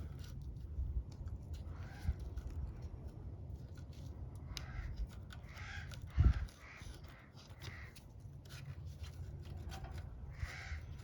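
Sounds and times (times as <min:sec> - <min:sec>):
crows cawing: 0:01.7 - 0:02.4, 0:04.4 - 0:08.1, 0:10.3 - 0:11.0.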